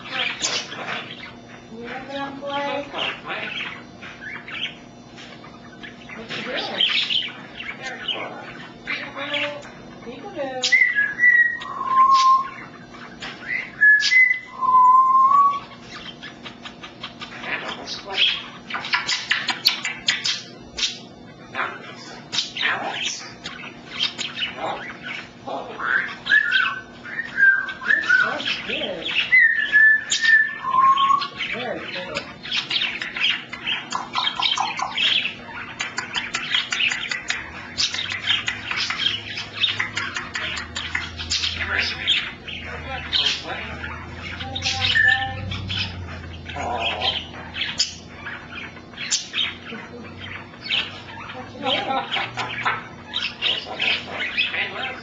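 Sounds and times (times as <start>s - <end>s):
parrot whistling: 10.6s - 16.4s, 17.1s - 31.5s, 32.6s - 49.6s.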